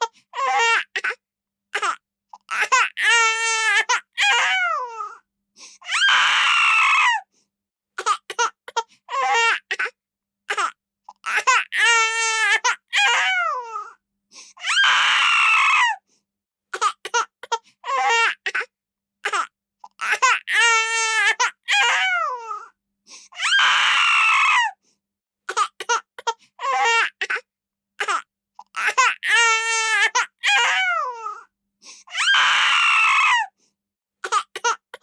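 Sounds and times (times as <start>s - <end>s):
baby crying: 0.4s - 1.2s, 1.8s - 5.2s, 5.8s - 7.3s, 8.0s - 14.0s, 14.6s - 16.0s, 16.8s - 22.7s, 23.4s - 24.8s, 25.5s - 31.5s, 32.1s - 33.6s.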